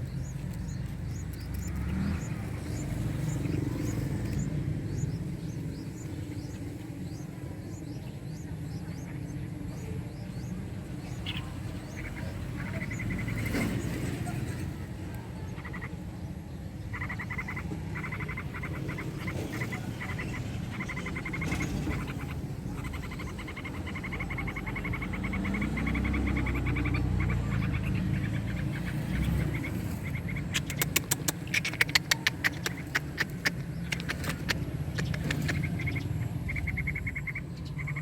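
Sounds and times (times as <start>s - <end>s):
nestling birds chirping: 0.0s - 38.0s
sharp loud clicks: 30.5s - 35.6s.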